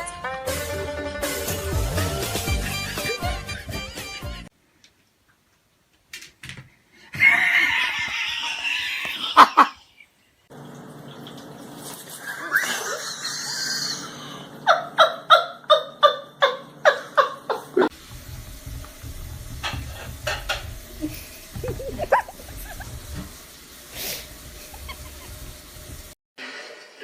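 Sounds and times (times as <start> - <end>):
background noise: 4.5 - 10.5
laughter: 7.2 - 9.9, 12.4 - 17.9, 21.0 - 23.1, 24.6 - 25.5.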